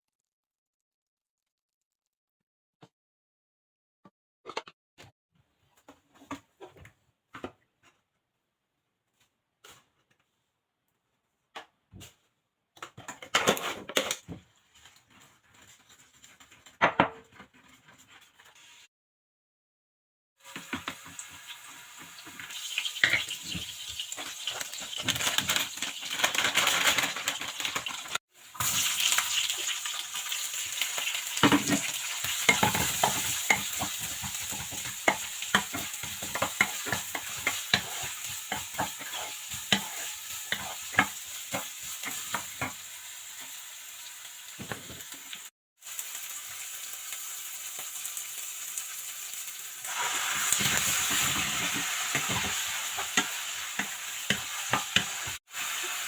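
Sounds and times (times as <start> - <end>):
food sizzling in a pan: 20.4 - 56.0.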